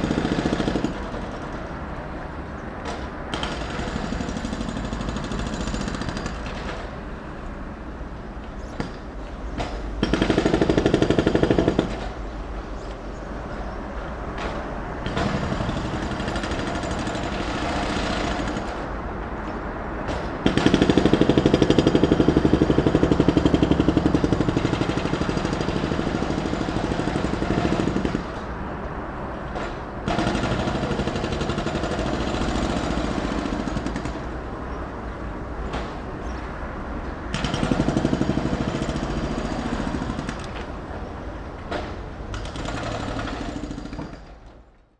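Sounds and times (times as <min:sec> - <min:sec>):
jackhammer hammering: 0:00.0 - 0:01.8, 0:02.8 - 0:07.0, 0:09.6 - 0:12.3, 0:14.4 - 0:19.0, 0:20.1 - 0:28.7, 0:29.5 - 0:34.6, 0:37.3 - 0:40.8, 0:41.7 - 0:44.5
traffic rumble: 0:00.0 - 0:44.9.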